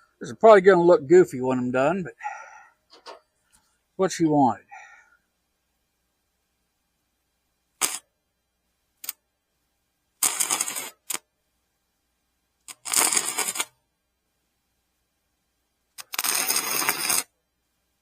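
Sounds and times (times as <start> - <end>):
electric welding arc: 7.8 - 8.0, 10.2 - 11.2, 12.7 - 13.7, 16.0 - 17.3.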